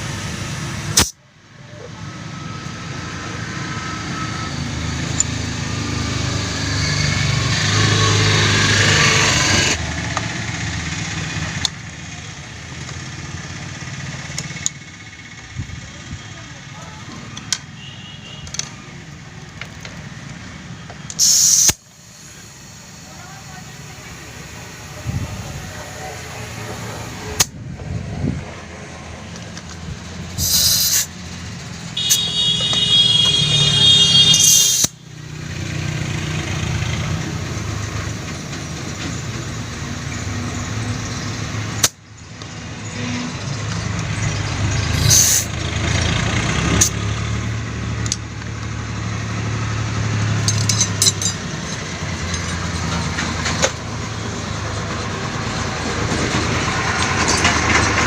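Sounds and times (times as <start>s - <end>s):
vehicle engines and traffic: 0.0s - 58.0s
hissing bursts: 21.1s - 27.5s, 30.2s - 35.0s, 44.9s - 45.6s.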